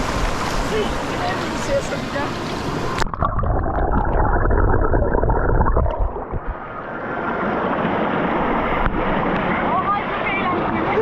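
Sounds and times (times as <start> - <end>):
muffled underwater water rush: 0.0 - 11.0.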